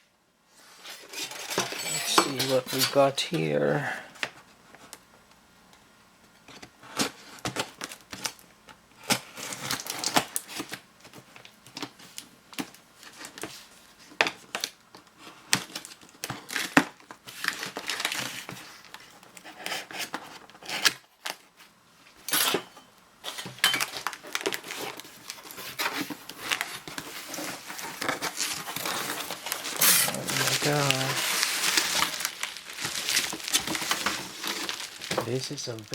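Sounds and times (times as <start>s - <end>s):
plastic packaging crinkling: 0.8s - 3.5s, 9.4s - 13.6s, 15.5s - 19.1s, 23.3s - 35.9s.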